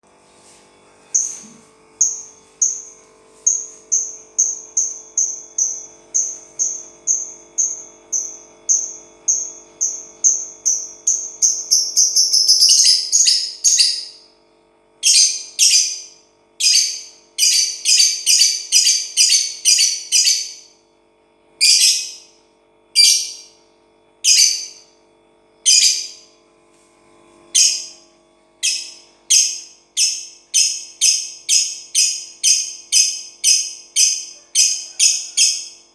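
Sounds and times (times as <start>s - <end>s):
lovebird chirping: 1.2s - 2.9s, 3.5s - 14.2s, 15.0s - 20.6s, 21.6s - 22.2s, 23.0s - 23.5s, 24.2s - 24.8s, 25.7s - 26.2s, 27.6s - 27.9s, 28.6s - 35.8s.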